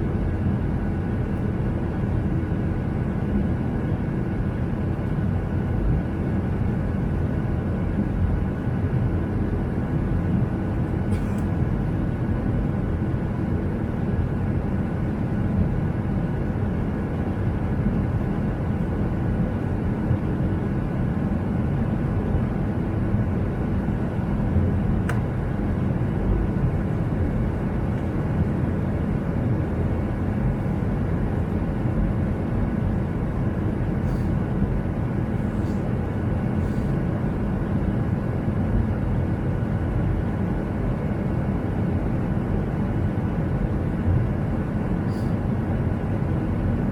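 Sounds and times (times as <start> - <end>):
faint click: 25.0 - 25.2.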